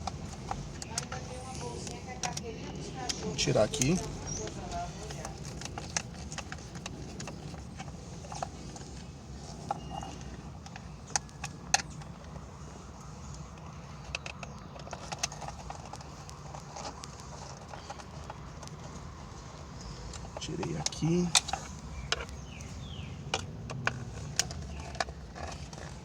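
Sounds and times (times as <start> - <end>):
hand tools clicking and knocking: 0.0 - 9.0, 20.0 - 26.0.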